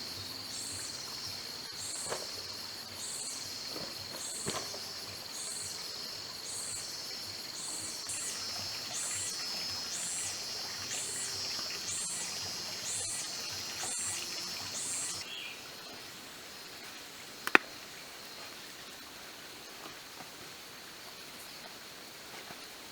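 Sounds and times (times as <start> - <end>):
insect steady high trill: 0.0 - 15.7
insect pulsing call: 0.0 - 16.6, 17.2 - 18.8.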